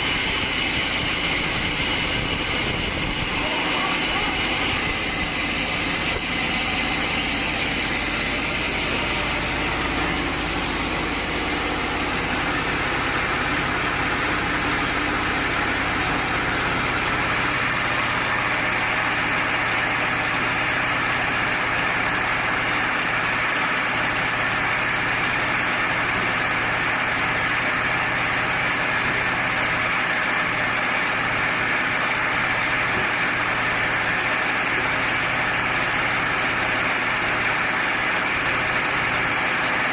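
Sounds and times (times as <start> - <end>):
woodworking machinery running: 0.0 - 39.9.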